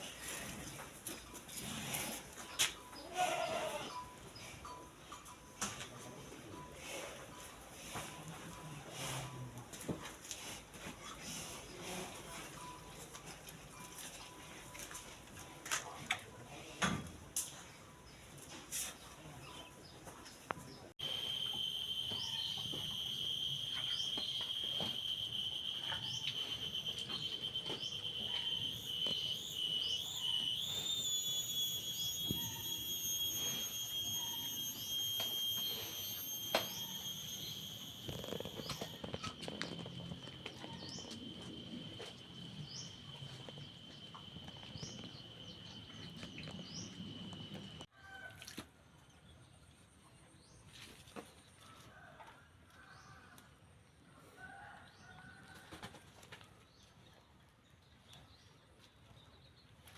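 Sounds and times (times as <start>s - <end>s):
high-pitched insect drone: 21.0s - 40.2s.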